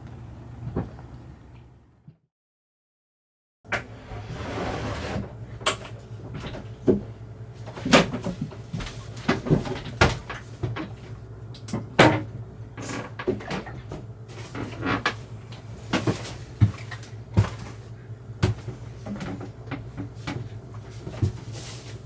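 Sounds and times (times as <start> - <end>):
steady low hum: 5.2 - 22.0.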